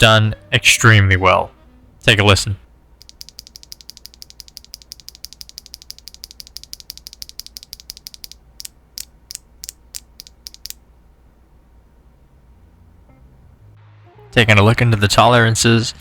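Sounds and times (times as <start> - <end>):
mechanical keyboard switches clicking: 3.0 - 10.8.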